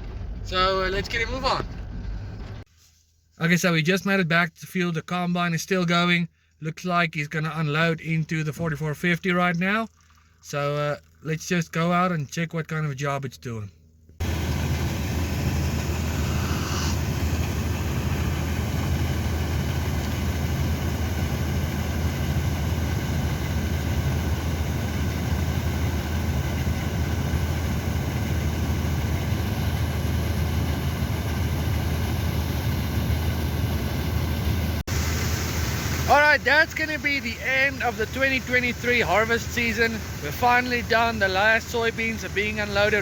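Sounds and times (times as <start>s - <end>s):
combine harvester engine drone: 0.0s - 2.6s, 14.2s - 43.0s.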